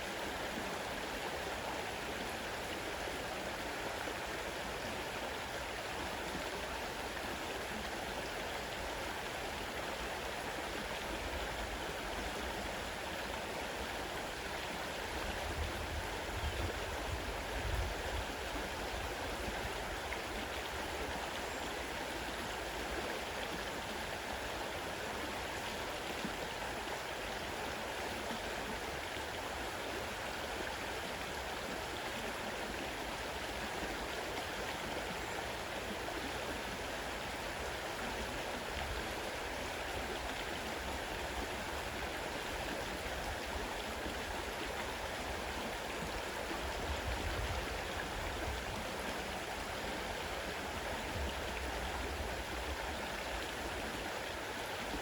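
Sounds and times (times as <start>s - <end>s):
river water rushing: 0.0s - 55.0s.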